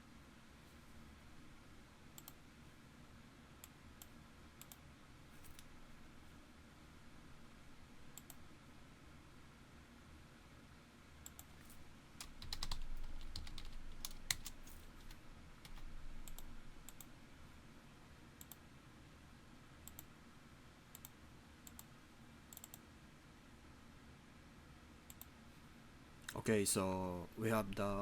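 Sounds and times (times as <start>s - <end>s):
mouse clicks: 2.2s - 2.4s, 3.6s - 4.8s, 8.1s - 8.4s, 15.7s - 17.1s, 19.8s - 20.1s, 20.9s - 21.9s, 22.5s - 22.8s, 25.1s - 25.3s
keyboard keystrokes: 12.2s - 17.1s.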